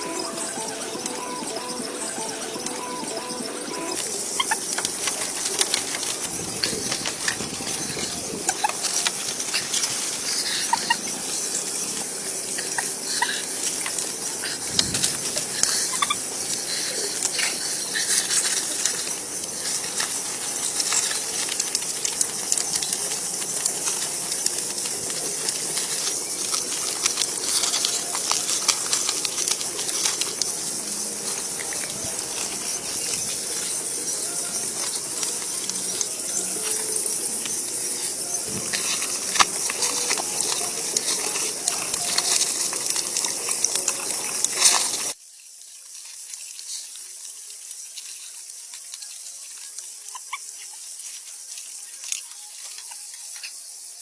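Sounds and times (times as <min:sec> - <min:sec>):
high-pitched hiss: 0:00.0 - 0:54.0
small ticks and clicks: 0:00.0 - 0:54.0.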